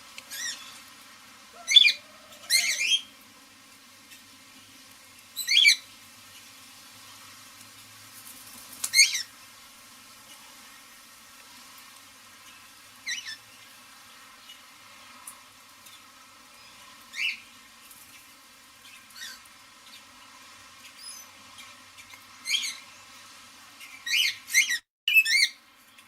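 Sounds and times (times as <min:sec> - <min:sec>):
parrot squawking: 0:00.3 - 0:00.8, 0:01.5 - 0:03.1, 0:05.4 - 0:05.8, 0:08.9 - 0:09.3, 0:13.0 - 0:13.4, 0:24.0 - 0:25.6.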